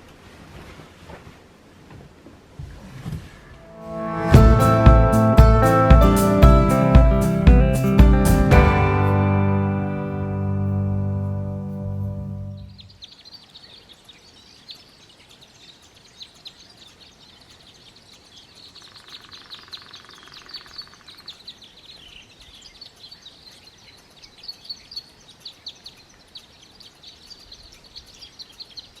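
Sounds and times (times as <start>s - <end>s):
songbirds chirping: 3.4s - 29.0s
guitar tune: 3.6s - 12.8s.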